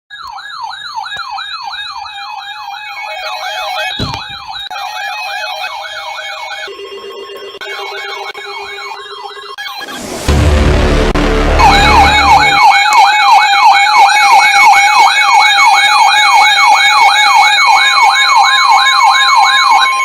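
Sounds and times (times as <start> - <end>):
electronic siren yelping: 0.1 - 10.4, 11.3 - 20.0
loud rumbling horn blast: 10.3 - 12.6.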